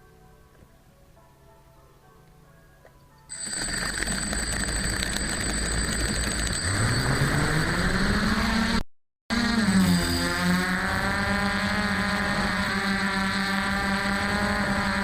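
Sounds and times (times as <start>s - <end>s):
high electronic whine: 3.3s - 15.0s
quadcopter motors spooling up: 3.4s - 15.0s.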